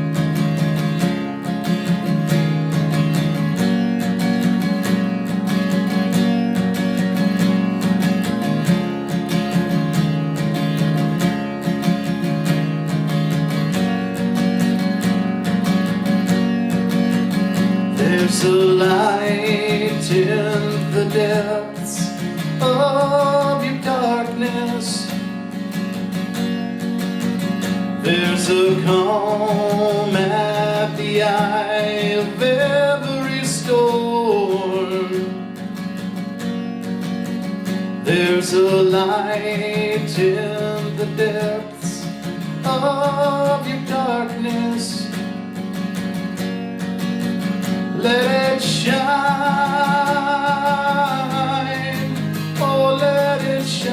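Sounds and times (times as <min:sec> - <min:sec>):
acoustic guitar strumming: 0:00.0 - 0:53.9
person singing: 0:17.8 - 0:25.2, 0:28.0 - 0:35.5, 0:38.0 - 0:45.2, 0:48.0 - 0:53.9.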